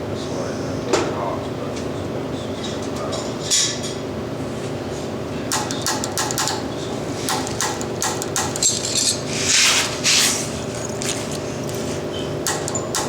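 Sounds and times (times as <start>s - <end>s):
tools clicking and knocking: 5.5s - 6.6s, 7.3s - 9.3s, 12.4s - 13.0s.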